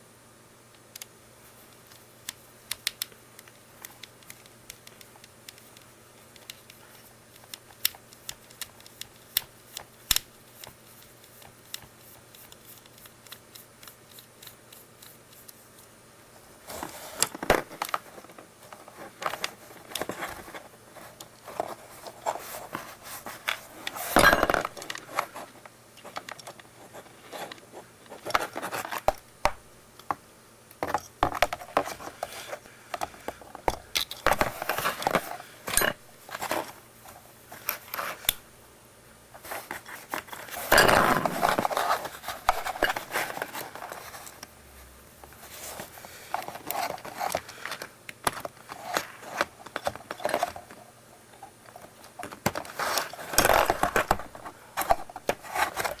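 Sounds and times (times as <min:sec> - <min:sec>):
plastic parts clicking and scraping: 0:16.7 - 0:29.2, 0:39.4 - 0:44.5, 0:45.7 - 0:50.8, 0:51.7 - 0:56.0.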